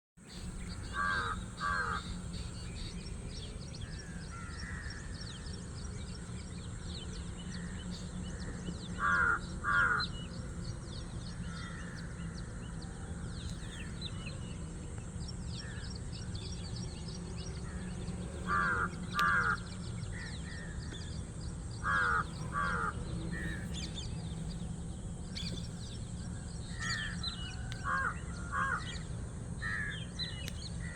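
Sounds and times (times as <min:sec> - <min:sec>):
constant low hum: 0:00.2 - 0:30.9
small birds chirping: 0:00.2 - 0:30.9
loud bird calls in pairs: 0:00.3 - 0:05.7, 0:07.5 - 0:10.4, 0:17.6 - 0:30.9.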